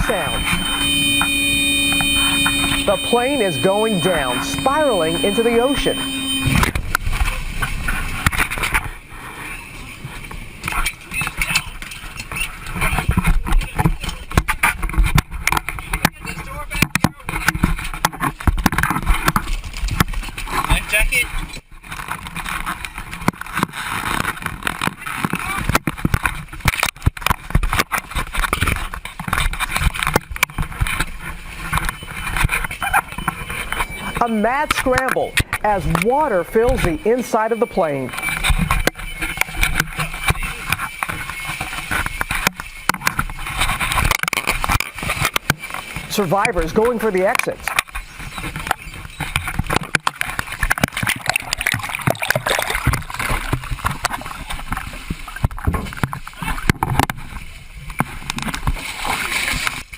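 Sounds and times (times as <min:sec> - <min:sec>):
water buffeting camera microphone: 0:00.0 - 0:59.9.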